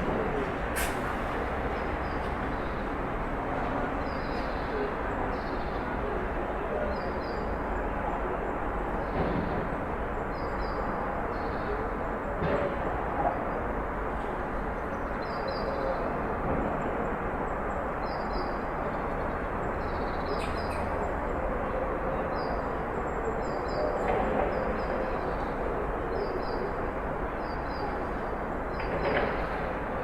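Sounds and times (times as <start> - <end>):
traffic hum: 0.0 - 6.8.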